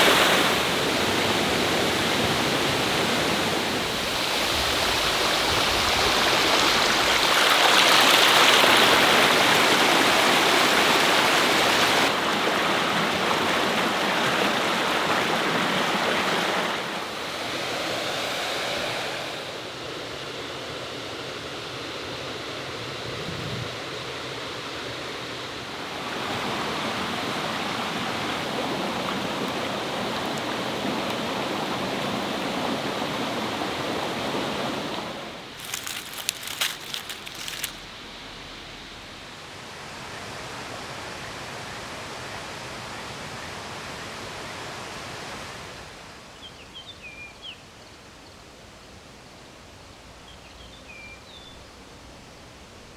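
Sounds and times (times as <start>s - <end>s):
stream rushing over rocks: 0.0s - 19.5s, 25.8s - 38.0s
sharp crackling clicks: 35.6s - 37.8s.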